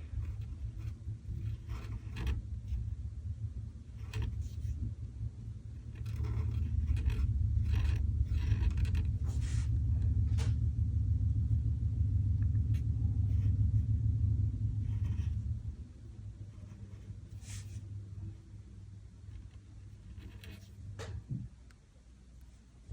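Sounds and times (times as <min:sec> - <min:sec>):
steady low rumble: 0:00.0 - 0:22.9
short scratchy strokes: 0:05.8 - 0:09.8, 0:16.5 - 0:17.8.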